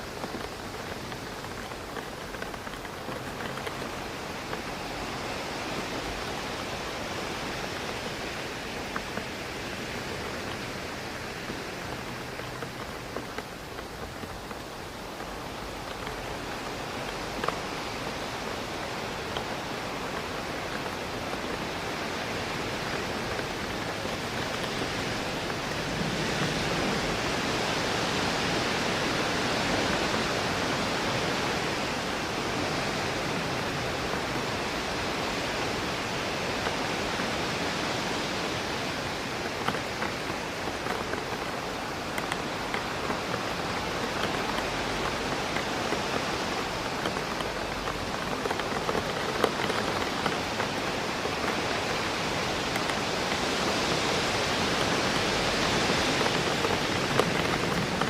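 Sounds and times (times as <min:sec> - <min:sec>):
rain pattering on window: 0:00.0 - 0:58.0
wind rushing through trees: 0:00.0 - 0:58.0.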